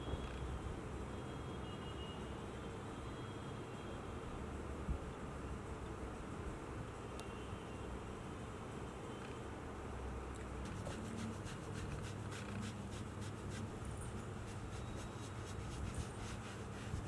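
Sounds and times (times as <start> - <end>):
hands rubbing clothing and skin: 10.6 - 17.0.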